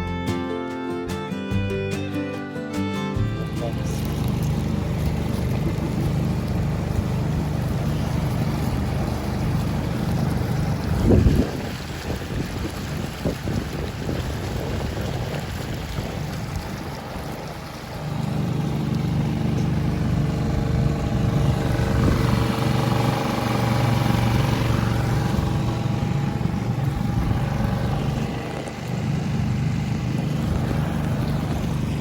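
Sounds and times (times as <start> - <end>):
motorboat engine running: 2.8 - 32.0.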